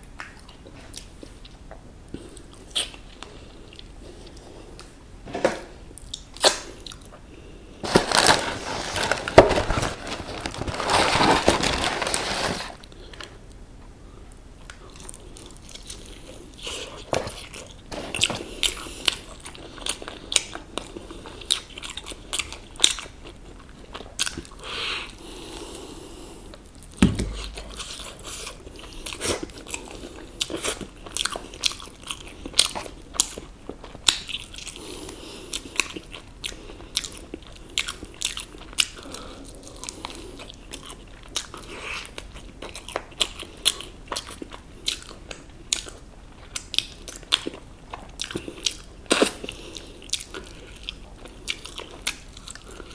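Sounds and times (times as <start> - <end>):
crunching and chewing fried chicken: 14.6 - 52.9
low thump: 27.0 - 27.7.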